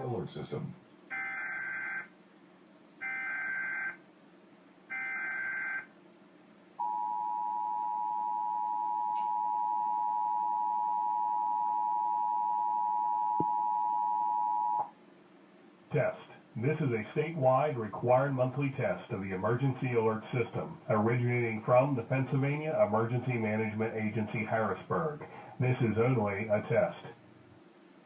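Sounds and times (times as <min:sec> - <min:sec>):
steady two-tone attention signal: 0:06.8 - 0:14.9.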